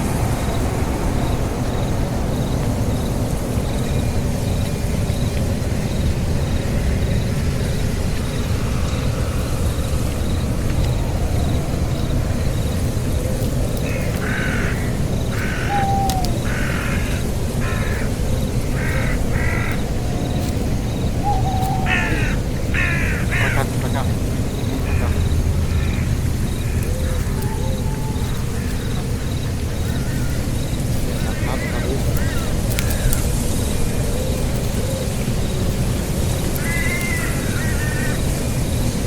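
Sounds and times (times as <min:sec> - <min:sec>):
bird giving short harsh calls: 0:14.2 - 0:18.1, 0:21.2 - 0:25.4
low rumble: 0:18.6 - 0:31.1.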